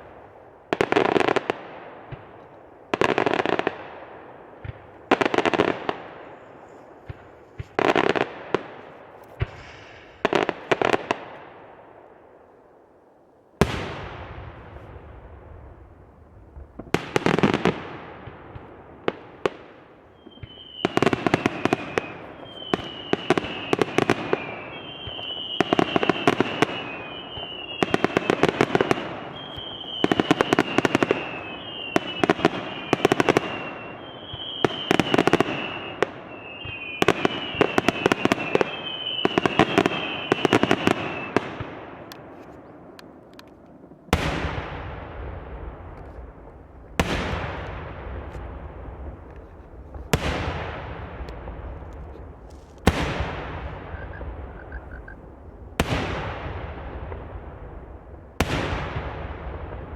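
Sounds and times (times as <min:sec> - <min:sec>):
firework cracks: 0:04.6 - 0:11.4, 0:13.6 - 0:59.9
falling firework whistles: 0:09.4 - 0:10.3, 0:20.1 - 0:41.6.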